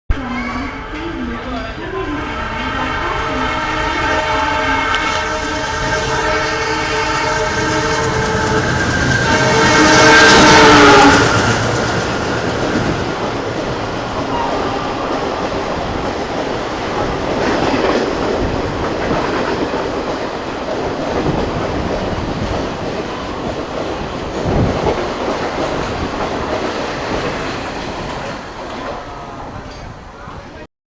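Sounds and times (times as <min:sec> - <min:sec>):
train clanks: 0:03.7 - 0:30.2
train wheels clattering on rails: 0:04.9 - 0:29.0.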